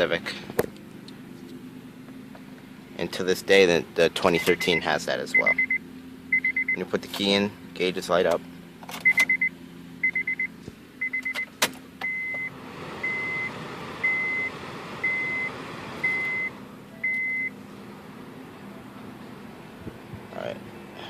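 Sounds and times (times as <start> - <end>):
car warning chime beeps: 4.3 - 6.9, 9.0 - 17.6.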